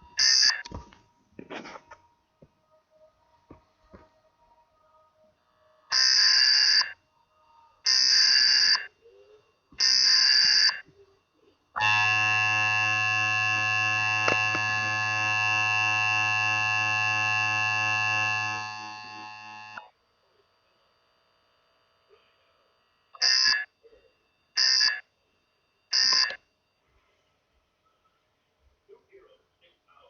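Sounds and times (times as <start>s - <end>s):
data bursts: 0.0s - 0.8s, 7.9s - 9.0s, 9.8s - 10.9s, 24.5s - 25.1s, 25.9s - 26.5s
steady attention tone: 4.9s - 28.2s.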